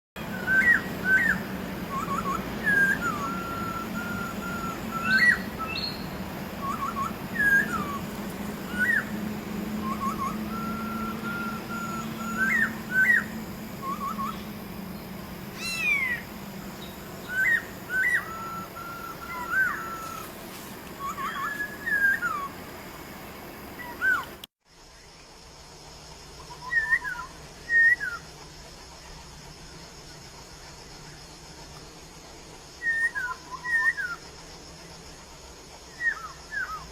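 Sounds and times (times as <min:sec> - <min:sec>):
bird whistling calls: 0:00.2 - 0:23.1, 0:23.7 - 0:24.4, 0:26.5 - 0:28.3, 0:32.8 - 0:34.2, 0:35.9 - 0:36.9
low steady hum: 0:00.2 - 0:36.9.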